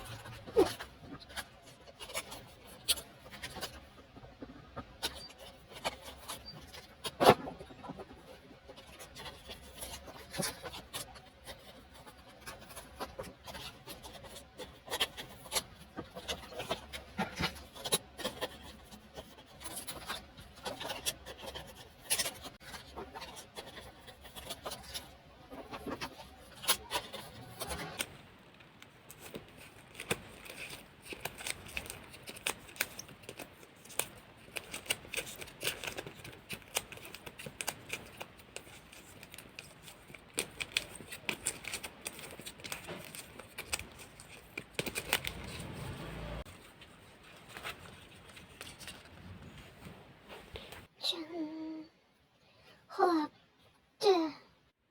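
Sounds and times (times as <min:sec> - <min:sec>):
items scraping: 0:19.6 - 0:50.9
packaging rustling: 0:25.8 - 0:49.2.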